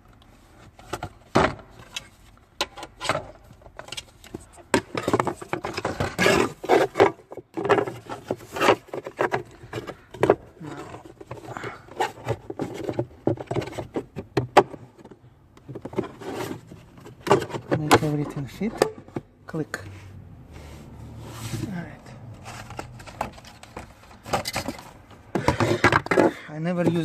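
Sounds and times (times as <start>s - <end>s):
plastic clicks and scraping: 1.8s - 19.3s, 22.4s - 27.0s.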